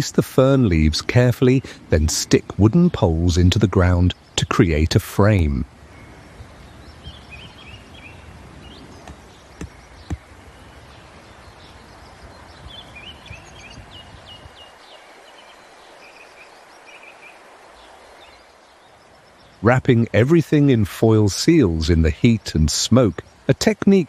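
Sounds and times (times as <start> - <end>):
small birds chirping: 0.0 - 24.0
sharp knocks: 9.0 - 10.3.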